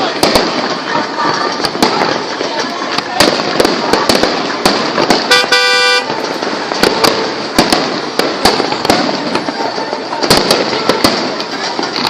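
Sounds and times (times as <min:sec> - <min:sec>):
firecrackers banging and crackling: 0:00.0 - 0:12.0
horn-like toot: 0:05.3 - 0:06.1.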